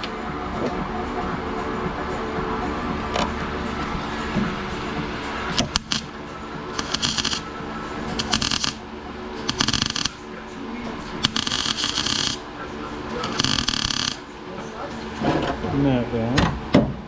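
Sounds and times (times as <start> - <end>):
sharp clicks: 3.0 - 7.4, 8.1 - 8.8, 9.4 - 10.3, 11.1 - 12.5, 13.1 - 14.3
welder arc crackling: 3.0 - 15.6
steady low hum: 3.0 - 16.0.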